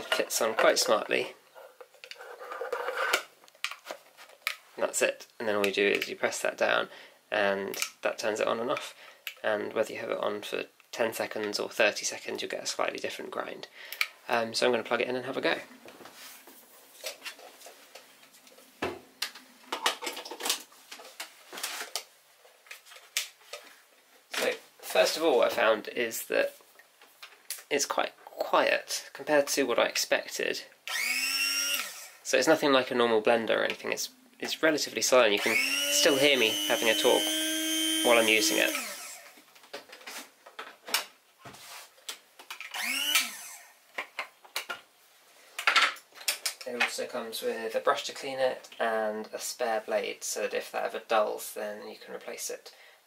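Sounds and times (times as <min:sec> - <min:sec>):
coffee grinder motor whine: 0:30.9 - 0:32.2, 0:35.4 - 0:39.4, 0:42.7 - 0:43.7.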